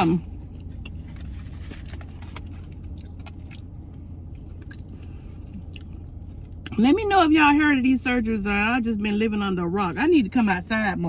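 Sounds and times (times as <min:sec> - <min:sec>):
low hum: 0:00.0 - 0:11.0
crunchy chewing: 0:00.3 - 0:06.7.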